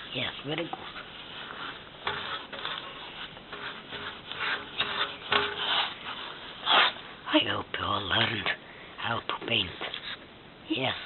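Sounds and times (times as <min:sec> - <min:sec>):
paintbrush scraping a surface: 0:00.0 - 0:07.2.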